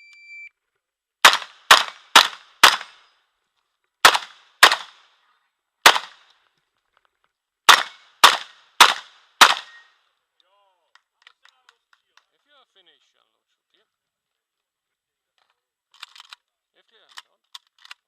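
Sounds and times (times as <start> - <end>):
shotgun firing rapid shots: 1.2 - 3.0, 4.0 - 5.0, 5.8 - 6.2, 7.7 - 9.8.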